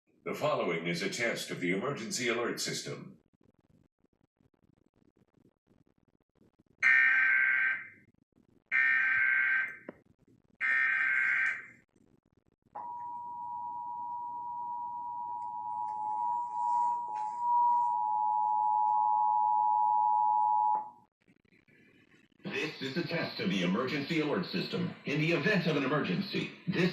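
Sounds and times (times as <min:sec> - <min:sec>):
steady two-tone alert signal: 0:12.8 - 0:20.8.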